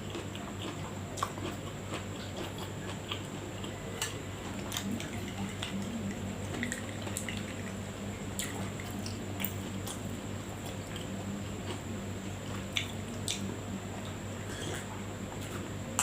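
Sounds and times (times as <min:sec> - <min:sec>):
close chewing and mouth clicks: 0:00.0 - 0:07.8, 0:12.4 - 0:13.5
steady low hum: 0:00.0 - 0:16.0
faint high whine: 0:02.6 - 0:16.0.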